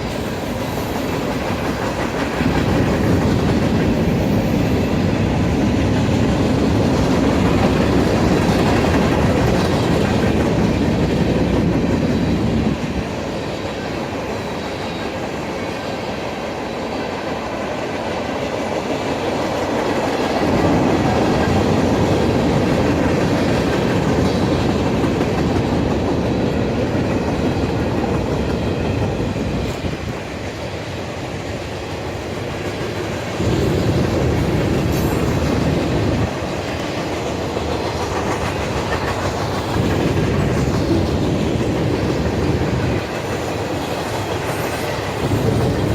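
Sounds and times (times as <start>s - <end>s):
freight train wheels rumbling: 0.0s - 45.9s.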